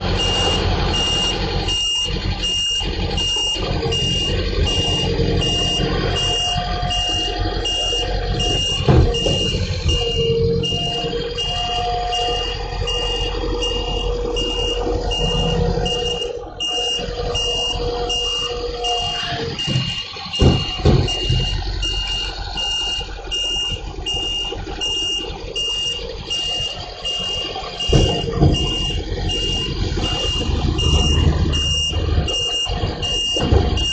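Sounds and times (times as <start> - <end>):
garbage truck running: 0.0 - 33.9
held whine: 0.0 - 33.9
reversing warning beeper: 0.0 - 33.9
loud bangs: 2.9 - 22.3, 27.3 - 33.9.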